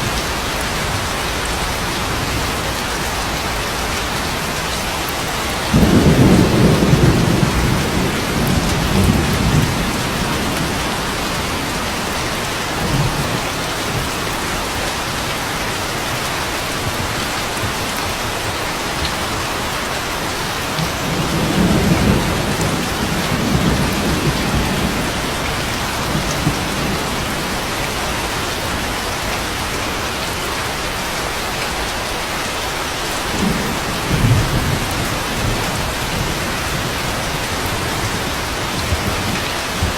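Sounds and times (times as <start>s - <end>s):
steady rain: 0.0s - 39.9s
rolling thunder: 5.5s - 14.2s, 20.8s - 29.2s, 33.3s - 39.9s.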